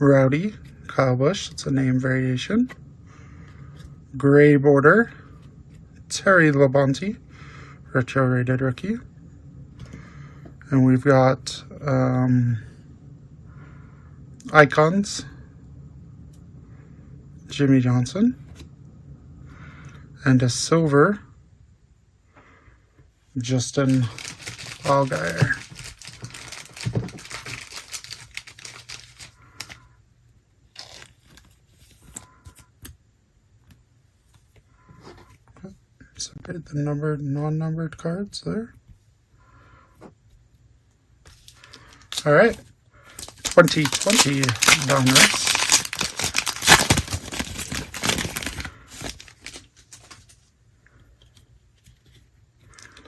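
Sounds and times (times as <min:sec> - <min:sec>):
trading cards rustling and crinkling: 0:23.8 - 0:29.8, 0:30.7 - 0:32.6, 0:41.3 - 0:53.0.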